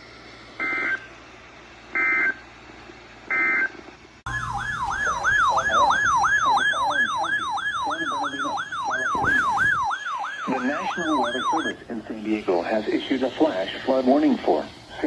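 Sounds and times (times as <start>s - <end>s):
siren-like warble: 4.3s - 14.2s
harsh digital chirps: 4.3s - 15.0s.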